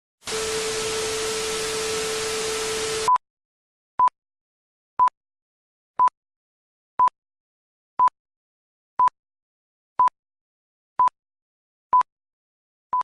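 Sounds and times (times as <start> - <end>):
static hiss: 0.2 - 3.1.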